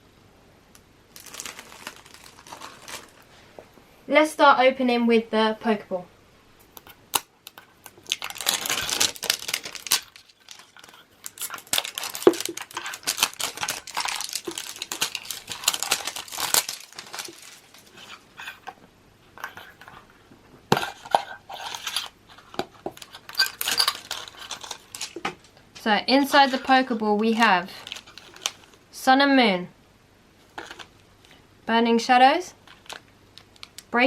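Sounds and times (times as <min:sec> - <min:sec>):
plastic wrapping crinkling and tearing: 0:01.1 - 0:03.6, 0:06.8 - 0:18.8, 0:20.7 - 0:25.6, 0:26.2 - 0:28.8, 0:30.5 - 0:31.4, 0:32.6 - 0:34.0.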